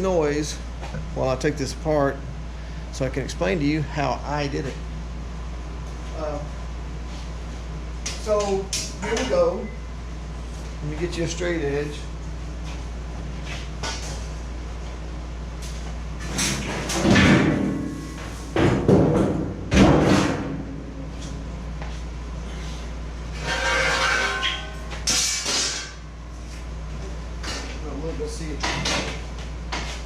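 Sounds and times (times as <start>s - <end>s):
steady low hum: 0.0s - 30.0s
ringing scrape of metal on metal: 23.3s - 25.4s
metal parts clanking and scraping: 23.3s - 26.0s
metal clatter: 23.4s - 26.0s.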